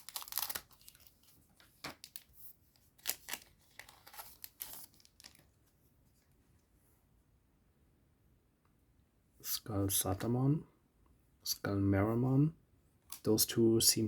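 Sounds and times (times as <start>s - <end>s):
foil wrapper ripping and crinkling: 0.0s - 2.3s, 3.0s - 5.4s.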